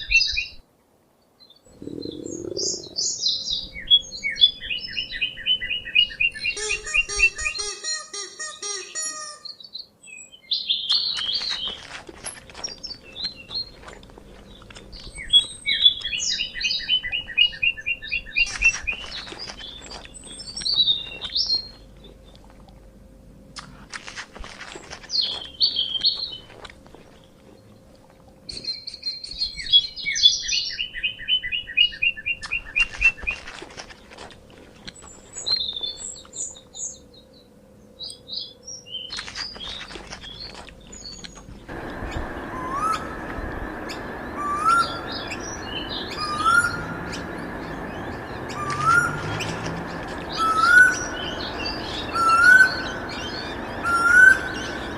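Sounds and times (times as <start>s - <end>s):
birds chirping and calling: 1.7s - 22.3s, 34.9s - 54.9s
bird trill: 1.7s - 22.4s, 25.1s - 26.5s, 35.0s - 54.9s.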